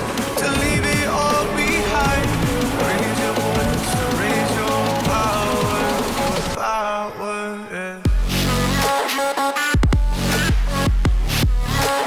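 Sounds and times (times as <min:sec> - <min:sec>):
dubstep music with bass drops: 0:00.0 - 0:07.1, 0:08.0 - 0:12.0
rock song: 0:00.0 - 0:09.3.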